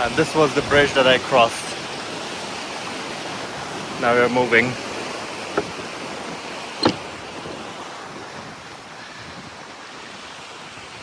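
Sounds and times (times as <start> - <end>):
river rushing: 0.0 - 11.0
sharp knocks: 5.5 - 5.8, 6.8 - 7.1.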